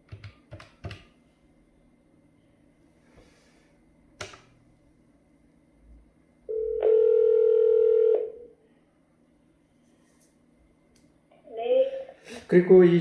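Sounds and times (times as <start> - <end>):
electronic telephone tone: 6.5 - 8.5.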